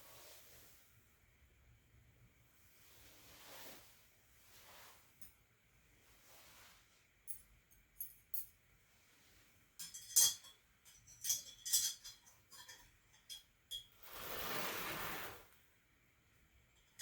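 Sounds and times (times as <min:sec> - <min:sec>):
charcoal and metal chopsticks clinking: 0:09.8 - 0:13.9.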